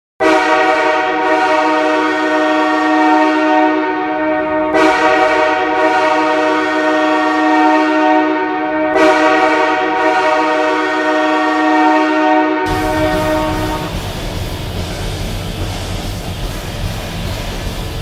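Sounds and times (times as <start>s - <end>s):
goal horn blaring: 0.2s - 14.1s.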